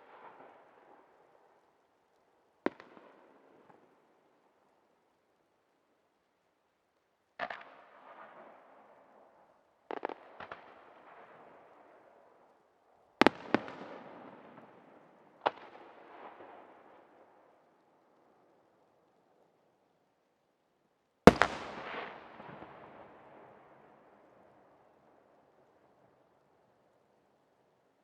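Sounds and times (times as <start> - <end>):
rolling echo: 21.3 - 25.4.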